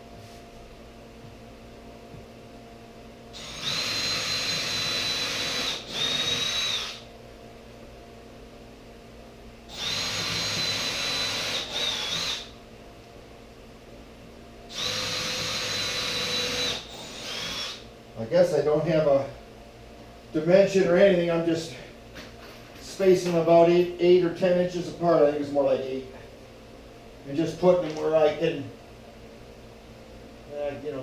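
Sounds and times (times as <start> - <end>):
power drill driving screws into wood: 3.4 - 7.0, 9.7 - 12.5, 14.7 - 17.8.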